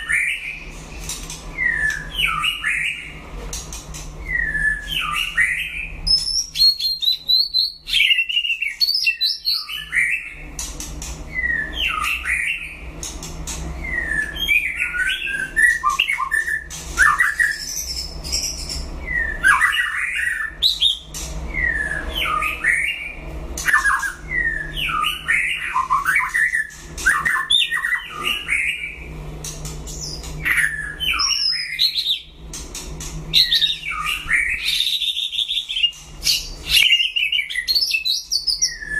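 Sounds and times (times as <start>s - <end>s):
songbird singing: 1.5s - 3.2s.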